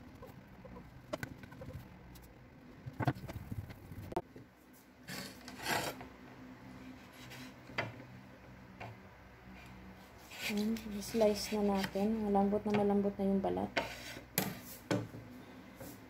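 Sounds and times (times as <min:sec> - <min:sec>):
scraping rub: 0:05.1 - 0:06.0, 0:09.5 - 0:12.0.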